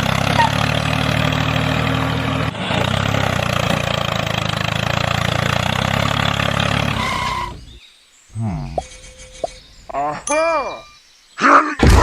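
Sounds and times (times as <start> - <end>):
small engine running: 0.0 - 7.6.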